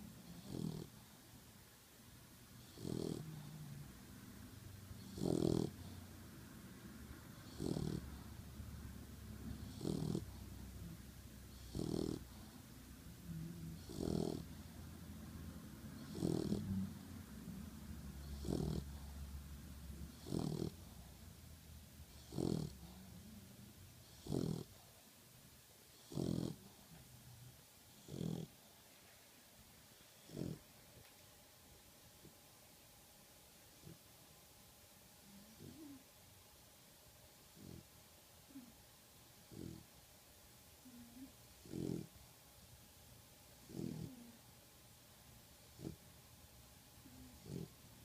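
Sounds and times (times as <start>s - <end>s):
dog snoring: 0.0s - 1.1s, 2.6s - 4.0s, 4.9s - 6.1s, 7.3s - 8.6s, 9.2s - 14.8s, 15.8s - 17.1s, 18.0s - 21.2s, 22.0s - 23.4s, 24.0s - 24.9s, 25.9s - 28.6s, 30.2s - 30.7s, 33.8s - 34.1s, 35.3s - 36.1s, 37.5s - 38.7s, 39.5s - 39.9s, 40.8s - 42.2s, 43.6s - 44.4s, 45.6s - 46.0s, 47.0s - 47.8s.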